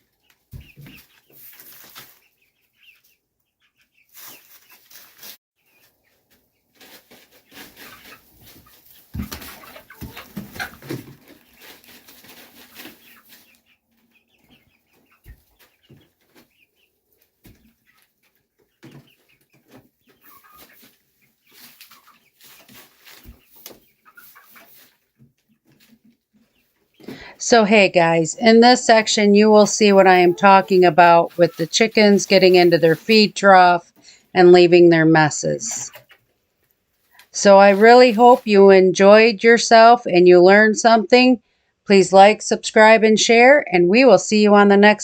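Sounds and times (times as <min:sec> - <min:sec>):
chickens clucking: 0:00.1 - 0:38.7
rustling: 0:00.6 - 0:02.3, 0:04.1 - 0:14.1, 0:15.2 - 0:27.3, 0:28.6 - 0:33.4, 0:36.6 - 0:38.5.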